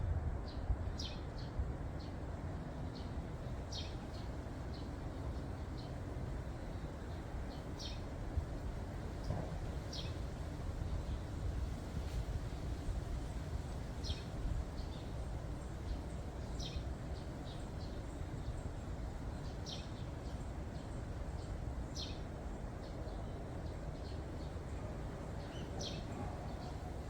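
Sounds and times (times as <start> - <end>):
wind rumble on microphone: 0.0 - 3.8, 7.0 - 19.3.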